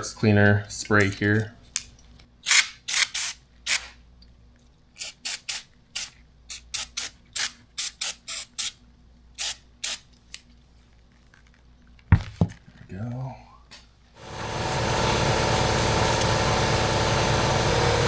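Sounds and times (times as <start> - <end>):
aerosol spray hissing bursts: 14.4 - 18.0.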